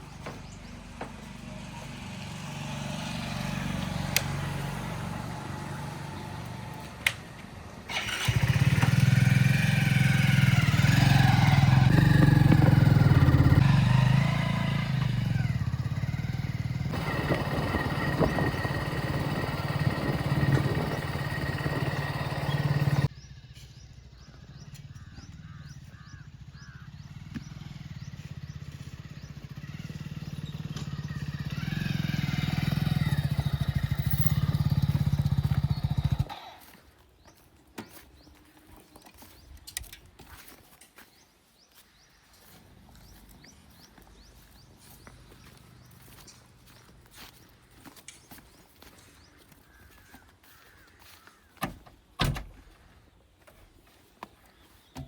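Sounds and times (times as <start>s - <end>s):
diesel engine running and revving: 0.1s - 7.2s, 7.9s - 23.2s, 25.4s - 36.7s, 42.4s - 47.9s.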